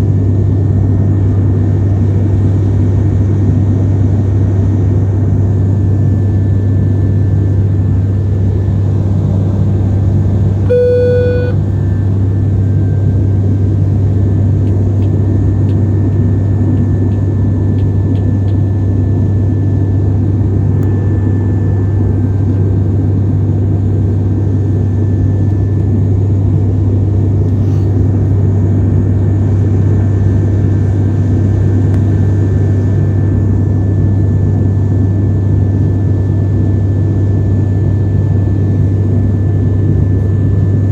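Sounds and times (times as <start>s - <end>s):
airplane cabin engine drone: 0.0s - 40.9s
short electronic beep: 10.6s - 11.6s.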